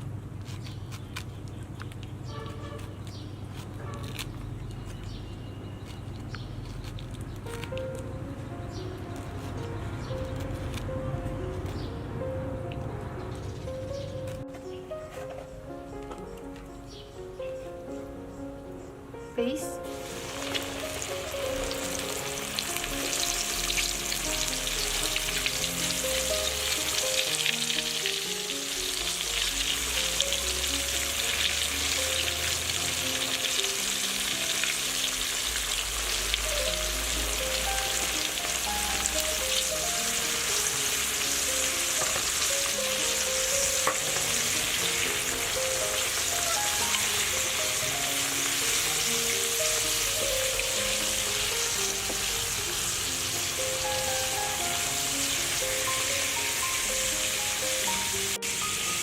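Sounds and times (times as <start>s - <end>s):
fish frying in hot oil: 19.8s - 59.0s.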